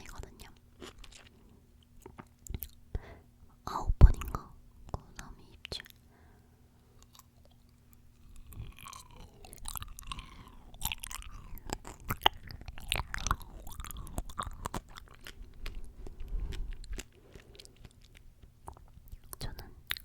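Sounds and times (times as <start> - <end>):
chewing crunchy fruit: 0.0 - 3.0, 6.8 - 20.0
wet mouth sounds: 7.0 - 20.0.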